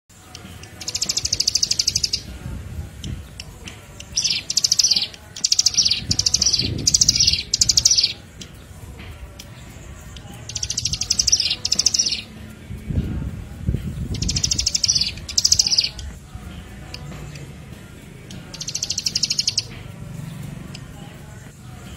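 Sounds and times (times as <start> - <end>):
birds giving buzzy trills: 0.1 - 21.9.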